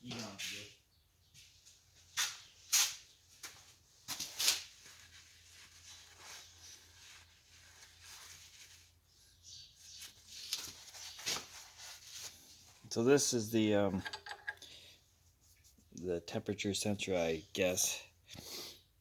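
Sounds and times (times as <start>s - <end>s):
tools knocking and scraping: 14.0s - 14.6s.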